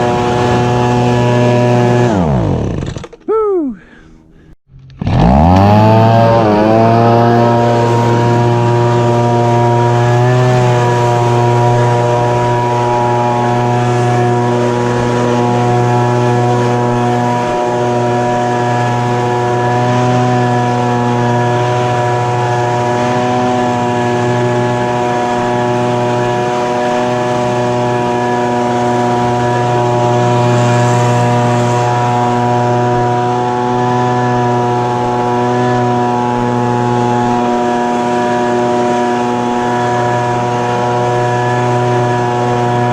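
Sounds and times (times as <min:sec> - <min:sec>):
leaf blower engine running: 0:00.0 - 0:03.2, 0:03.8 - 0:42.9.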